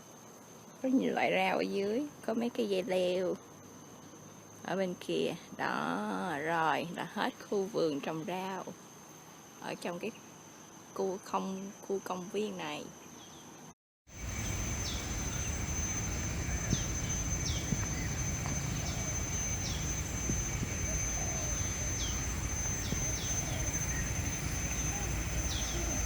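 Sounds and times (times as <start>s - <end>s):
high insect drone: 0.0s - 13.5s, 14.1s - 26.0s
steady low rumble: 14.2s - 26.0s.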